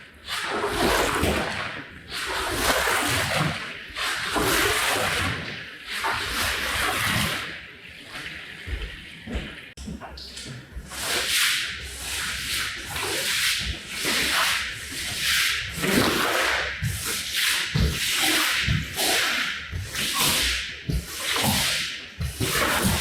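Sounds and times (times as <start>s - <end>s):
cleaning tool rasping on rug: 10.9s - 23.0s.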